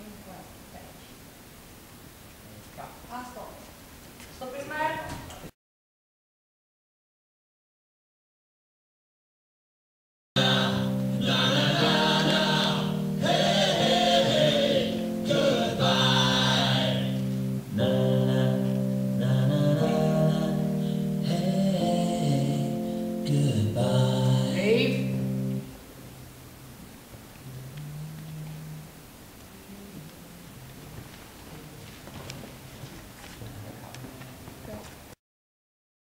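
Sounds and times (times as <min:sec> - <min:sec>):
choir singing over held chords: 0:10.4 - 0:26.0.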